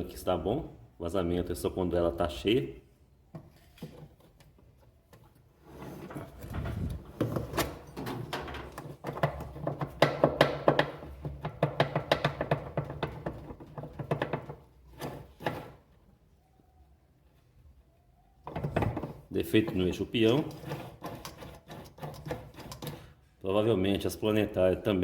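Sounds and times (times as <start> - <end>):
washing machine mechanism knocking: 9.1 - 14.6.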